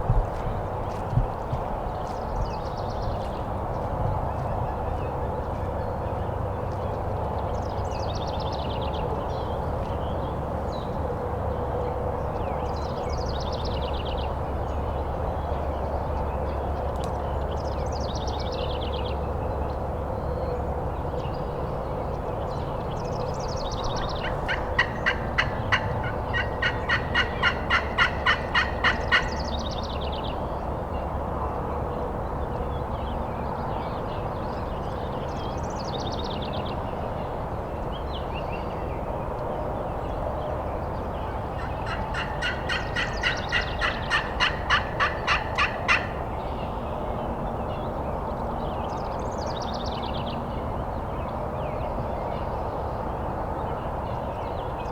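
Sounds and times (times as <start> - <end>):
turkey yelps: 41.6 - 46.1.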